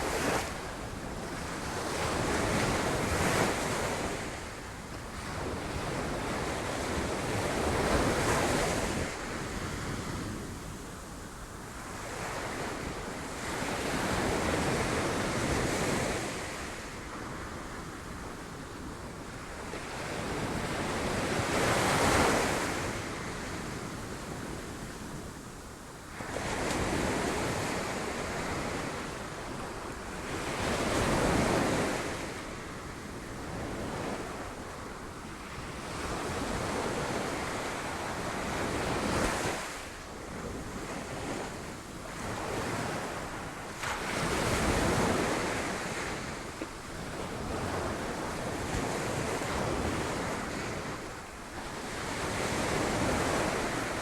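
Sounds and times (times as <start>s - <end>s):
wind on microphone: 26.2s - 54.0s.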